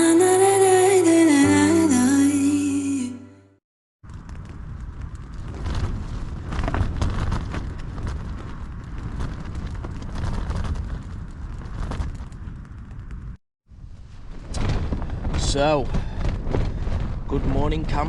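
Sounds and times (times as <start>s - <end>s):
strong wind buffeting tent: 4.0s - 18.0s.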